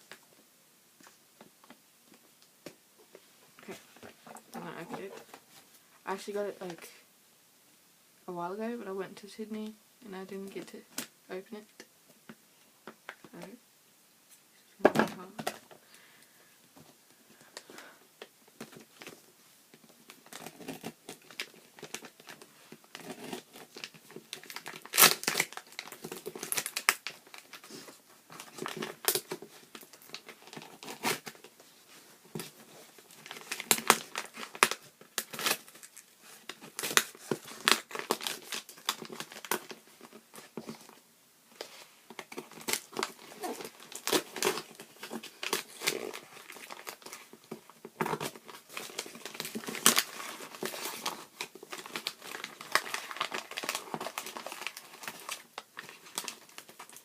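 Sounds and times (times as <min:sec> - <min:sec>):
packaging crinkling and rustling: 0:03.6 - 0:06.8, 0:17.6 - 0:57.0
packaging tearing: 0:20.2 - 0:27.6, 0:28.4 - 0:31.4, 0:33.1 - 0:39.8, 0:42.2 - 0:47.3, 0:48.1 - 0:57.0.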